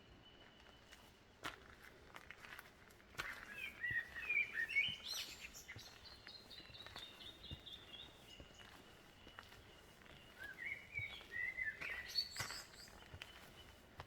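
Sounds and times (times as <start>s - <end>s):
songbird singing: 3.2s - 14.0s.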